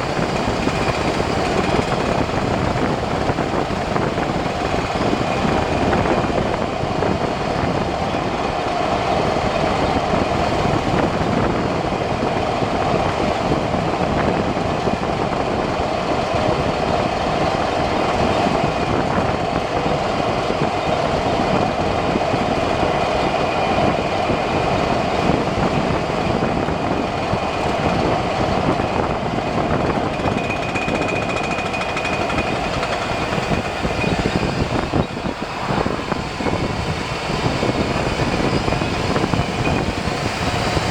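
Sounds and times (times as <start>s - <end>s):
road and wind noise: 0.0s - 40.9s
driveline whine: 17.5s - 40.9s.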